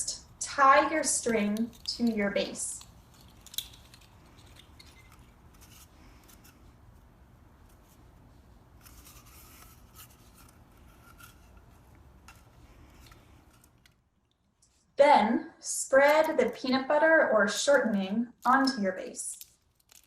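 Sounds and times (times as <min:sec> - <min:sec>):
string rustling and ticking: 0:01.2 - 0:14.8.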